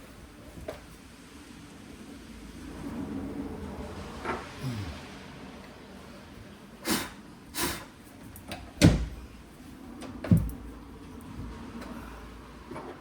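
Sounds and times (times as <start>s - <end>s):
window sash and lock clunking: 8.8s - 9.2s.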